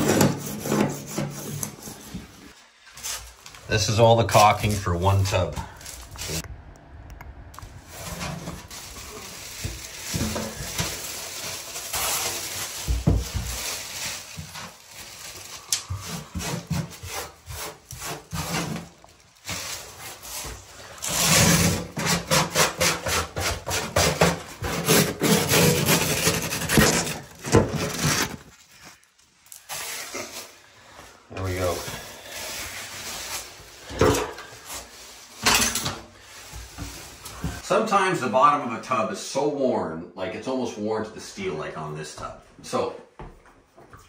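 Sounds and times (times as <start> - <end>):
scraping caulking from a tub: 15.8 - 28.6.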